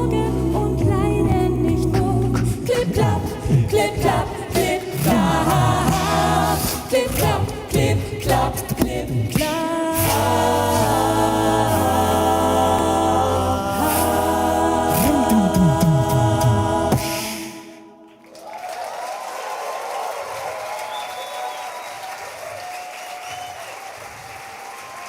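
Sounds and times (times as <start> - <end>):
male vocal group singing harmony: 0.0 - 18.0
vocal clicks: 0.5 - 10.9.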